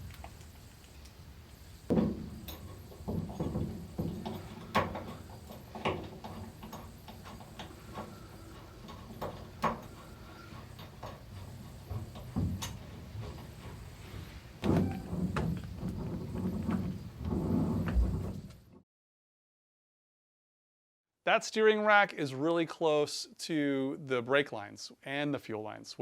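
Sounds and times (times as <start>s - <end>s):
hand tools clicking and knocking: 1.9s - 13.9s
knocking and rumbling: 1.9s - 18.8s.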